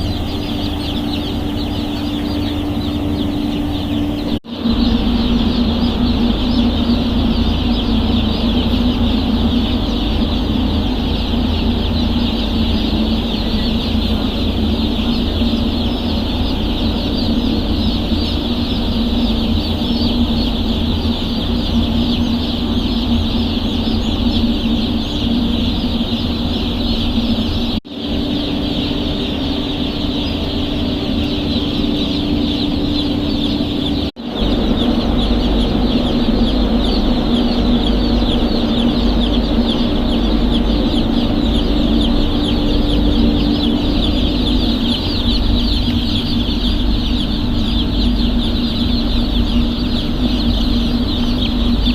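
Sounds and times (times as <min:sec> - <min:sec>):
chicks peeping: 0:00.0 - 0:51.9
steady low hum: 0:00.0 - 0:51.9.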